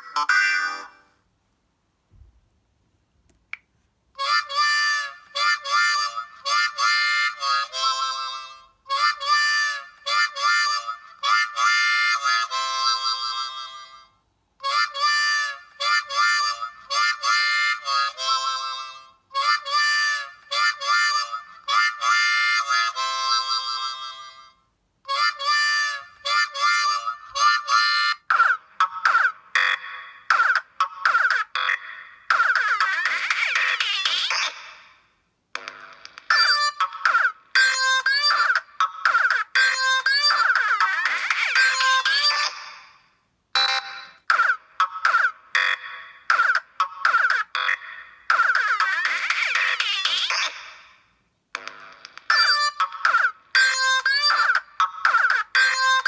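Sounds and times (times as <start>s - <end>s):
phone ringtone melody: 0.0s - 1.2s, 43.6s - 50.1s, 52.3s - 56.0s.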